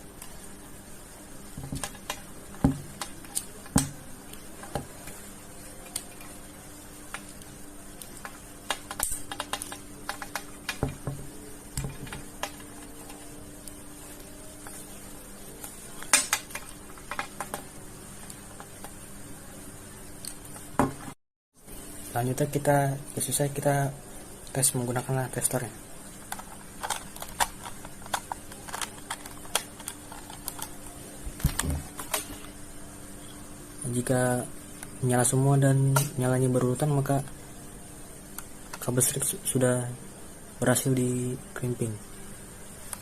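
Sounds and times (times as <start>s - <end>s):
faint hum: 0.0s - 43.0s
plastic cable being handled: 26.3s - 32.5s.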